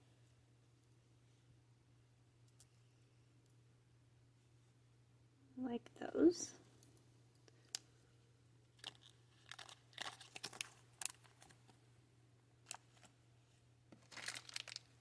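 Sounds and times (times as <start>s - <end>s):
plastic bead bags crinkling: 8.8s - 11.6s, 14.0s - 15.0s.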